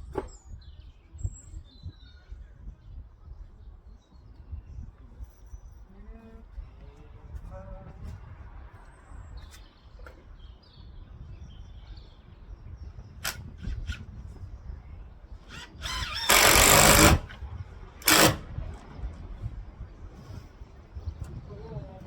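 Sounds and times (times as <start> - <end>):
power tool bursts: 15.5 - 17.4, 18.0 - 18.5.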